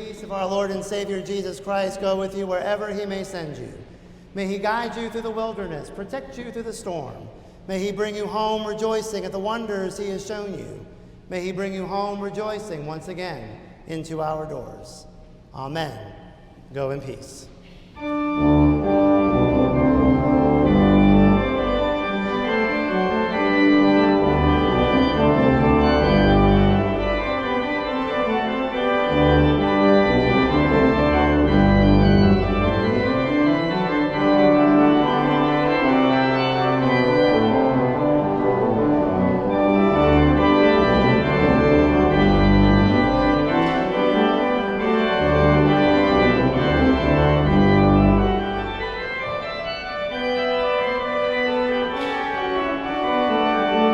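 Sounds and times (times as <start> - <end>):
church organ playing chords: 0.0 - 53.9.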